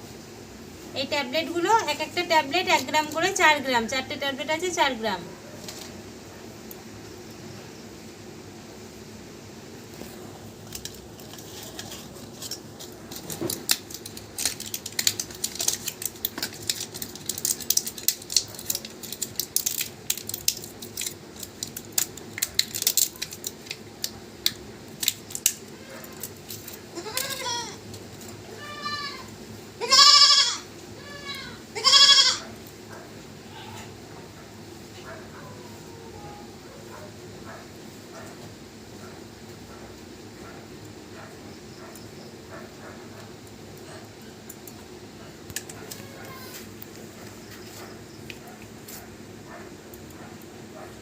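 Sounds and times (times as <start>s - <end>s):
rapid sharp clicks and crackles: 10.6s - 27.3s
goat bleating: 27.0s - 27.8s, 28.6s - 32.4s.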